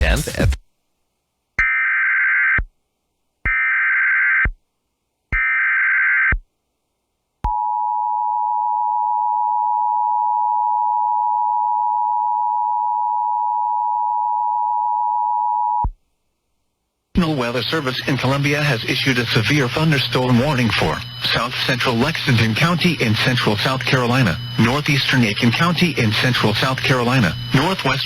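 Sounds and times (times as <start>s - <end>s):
harsh digital data bursts: 17.7s - 28.0s.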